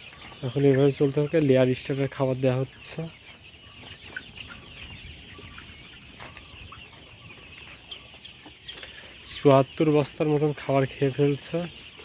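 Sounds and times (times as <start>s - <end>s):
flock of chickens clucking: 0.0s - 12.0s.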